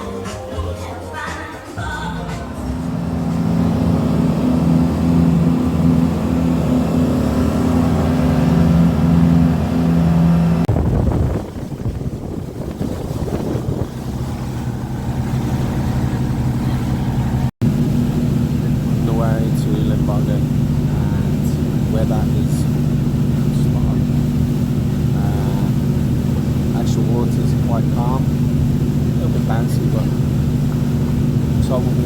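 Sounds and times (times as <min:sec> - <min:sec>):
motorboat engines humming: 0:00.0 - 0:32.0
water rushing: 0:02.0 - 0:32.0
wind: 0:02.7 - 0:32.0.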